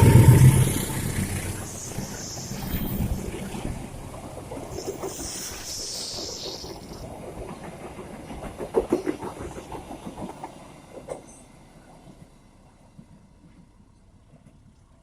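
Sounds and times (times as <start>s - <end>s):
hiss: 0.0s - 11.4s
train wheels clacking over rail joints: 6.7s - 14.7s.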